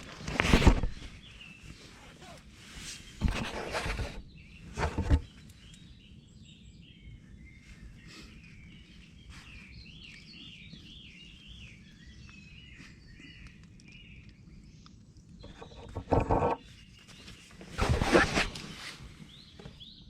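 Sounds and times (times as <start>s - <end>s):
songbirds singing: 0.0s - 20.0s
loud rustling bursts: 17.7s - 19.0s.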